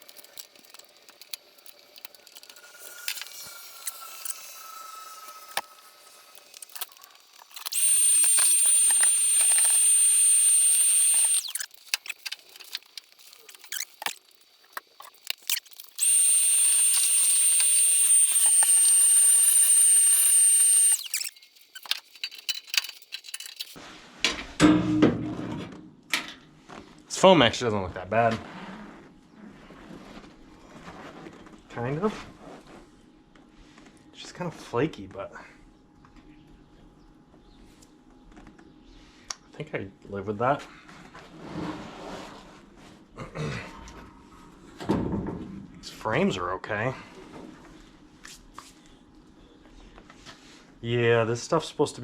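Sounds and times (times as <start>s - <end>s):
high-pitched tool whining: 7.6s - 11.7s, 15.9s - 21.4s.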